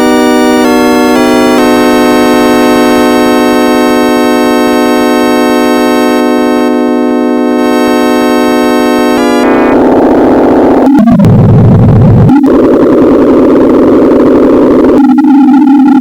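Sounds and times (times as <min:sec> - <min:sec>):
synthesized organ-like tone: 0:00.0 - 0:12.4.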